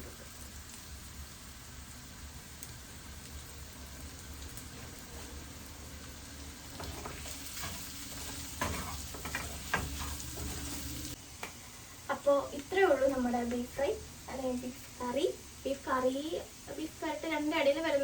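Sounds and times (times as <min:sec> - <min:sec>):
meat sizzling in a pan: 0:00.0 - 0:18.0
spoon scraping and clinking pan: 0:06.8 - 0:10.8.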